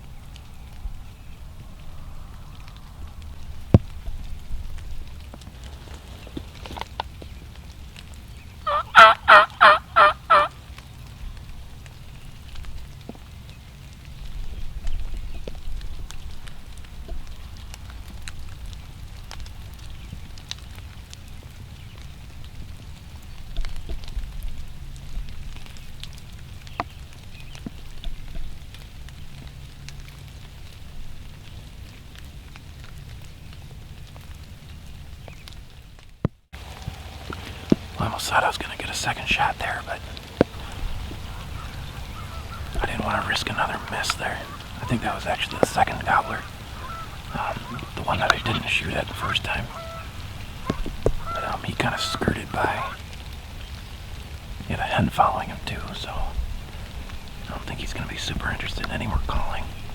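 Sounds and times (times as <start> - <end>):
steady outdoor hiss: 0.0 - 59.9
light ticks: 0.2 - 0.9, 10.4 - 48.6
turkey gobbling: 8.6 - 10.6, 40.5 - 53.0.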